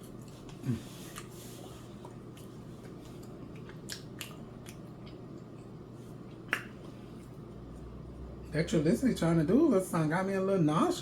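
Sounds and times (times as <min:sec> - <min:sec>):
chewing french fries: 0:00.0 - 0:08.1
steady low hum: 0:00.0 - 0:11.0.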